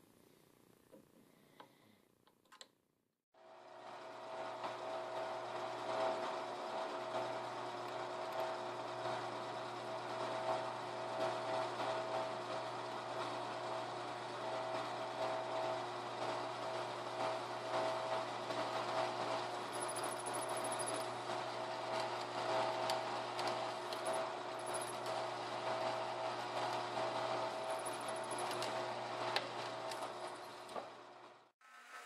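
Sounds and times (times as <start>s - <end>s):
electric motor humming: 3.7s - 31.3s.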